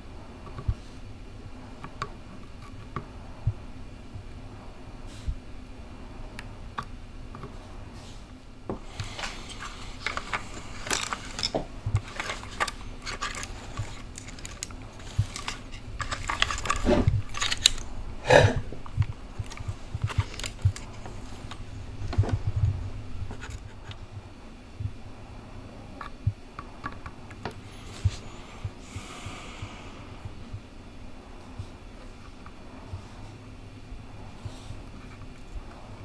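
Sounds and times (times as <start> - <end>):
scratching and scraping: 8.8 - 24.1.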